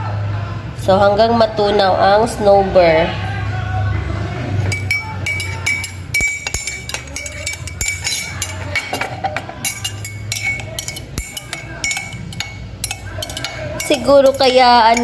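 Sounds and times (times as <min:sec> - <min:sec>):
spoon clinking in a cup: 0:04.7 - 0:15.0.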